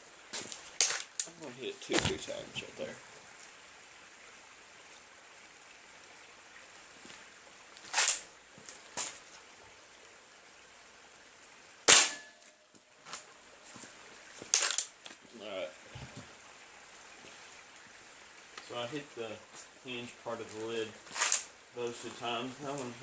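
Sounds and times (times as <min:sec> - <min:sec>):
air rifle shots: 0:11.9 - 0:12.2.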